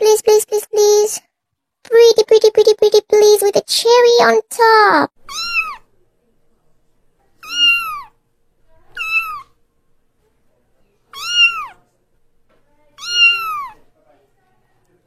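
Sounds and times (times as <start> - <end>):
cat meowing: 5.2 - 5.9, 7.4 - 8.2, 8.9 - 9.6, 11.1 - 11.8, 13.0 - 13.8.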